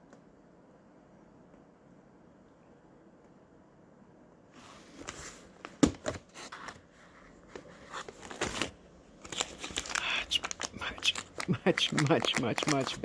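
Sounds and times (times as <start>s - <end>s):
plastic bag crinkling: 8.0s - 13.0s.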